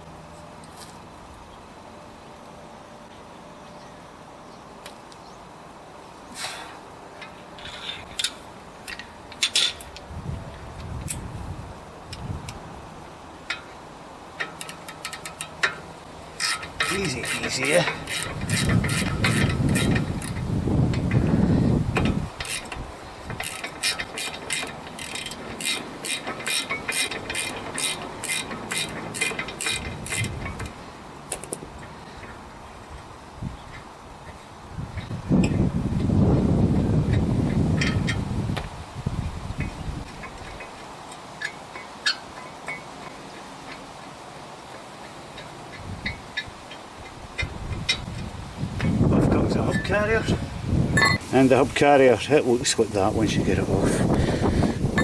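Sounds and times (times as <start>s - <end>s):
metal tools clinking and scraping: 7.2s - 10.0s, 14.4s - 20.4s, 22.4s - 32.3s
ratchet wrench clicking: 16.4s - 21.2s, 22.0s - 30.7s.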